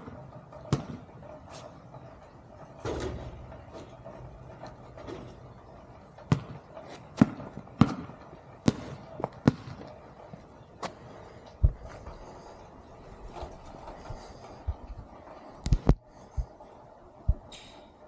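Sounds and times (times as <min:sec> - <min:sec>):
basketball bouncing on court: 0:00.0 - 0:01.0, 0:06.3 - 0:06.6, 0:07.2 - 0:10.0.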